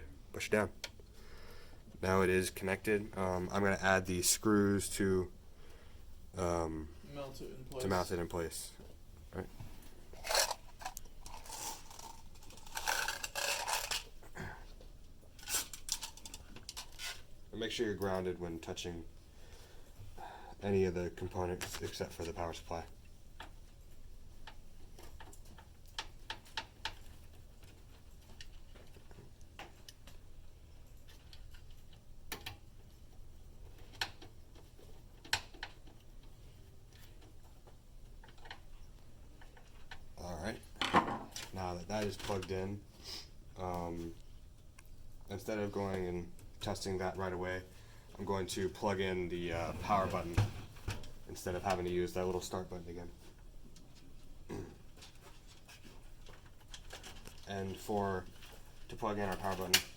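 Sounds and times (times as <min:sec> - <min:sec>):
computer parts clicking and tapping: 0:24.3 - 0:30.2.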